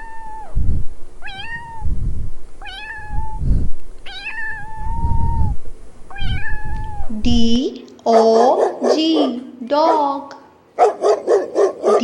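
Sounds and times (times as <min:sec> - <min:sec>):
cat meowing: 0:00.0 - 0:00.6, 0:01.2 - 0:02.0, 0:02.6 - 0:07.2
low rumbling: 0:00.0 - 0:07.8.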